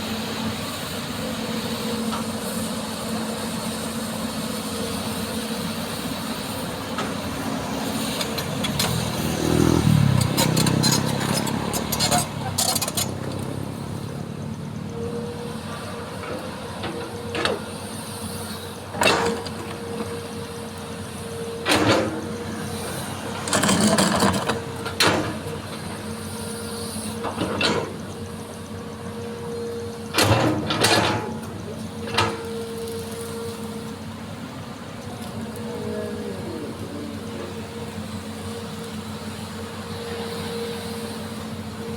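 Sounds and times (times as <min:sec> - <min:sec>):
excavator engine humming: 0:00.0 - 0:41.9
knocks and scrapes: 0:10.1 - 0:13.4.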